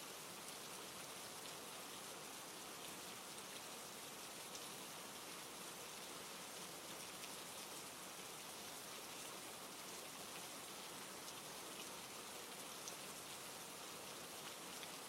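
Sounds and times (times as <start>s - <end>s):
steady rain hiss: 0.0s - 15.0s.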